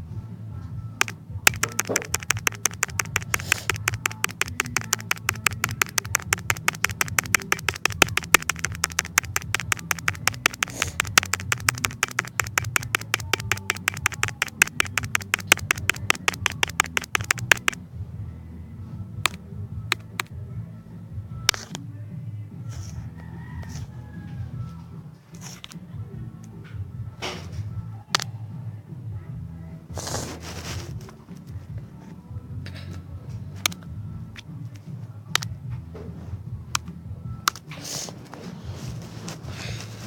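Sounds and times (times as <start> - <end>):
rapid sharp tapping: 1.5 - 17.8.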